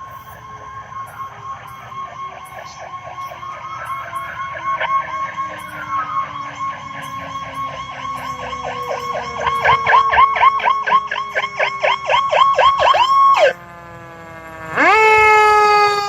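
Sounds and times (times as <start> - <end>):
fire truck siren yelp: 0.0 - 16.0
lower siren tone winding down: 0.0 - 16.0
siren wail rising: 0.0 - 16.0.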